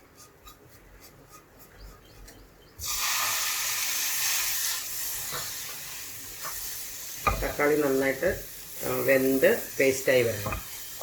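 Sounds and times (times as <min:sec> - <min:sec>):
tomatoes sizzling in hot oil: 0:02.8 - 0:11.0.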